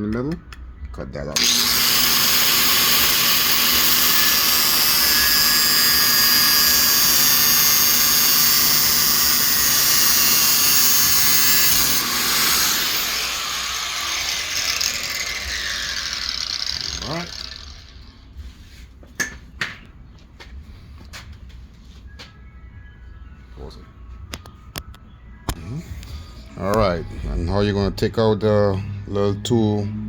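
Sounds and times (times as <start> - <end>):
small high-speed power tool cutting: 1.4 - 18.2.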